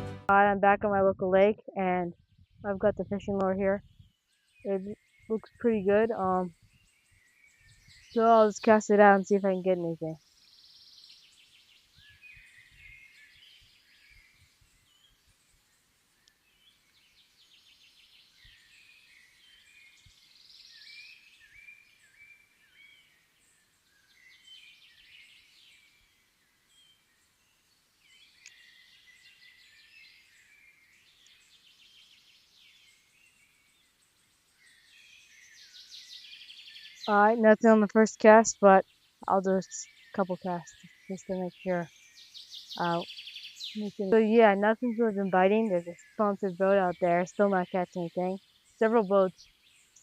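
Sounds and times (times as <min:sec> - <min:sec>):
faint songbird trills: 0:06.4 - 0:09.4, 0:10.1 - 0:37.1.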